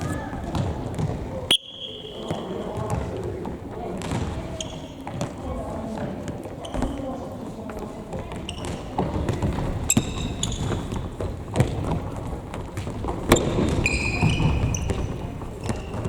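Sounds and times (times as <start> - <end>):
ball kicked and bouncing: 0.0 - 1.3, 2.2 - 4.4, 8.1 - 16.0
shoe squeaks on court: 4.5 - 5.1, 6.6 - 7.0, 8.4 - 9.0, 9.9 - 11.0, 13.3 - 16.0.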